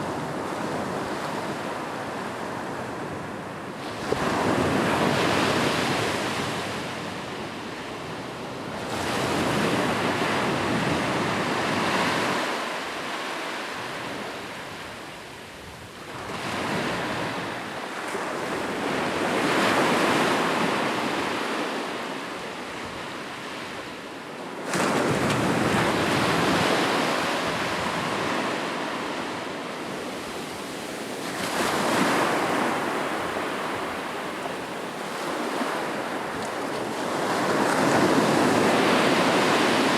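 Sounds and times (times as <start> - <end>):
waves breaking on shore: 24.7 - 39.9.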